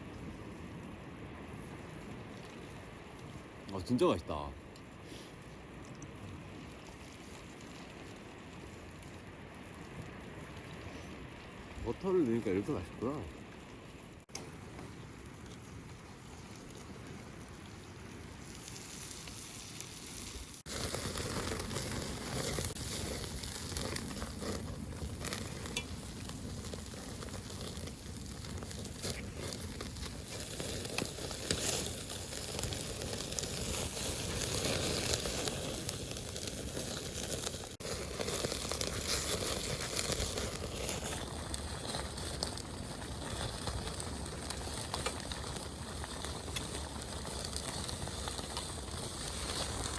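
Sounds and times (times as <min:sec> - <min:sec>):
food sizzling in butter: 0:18.5 - 0:49.9.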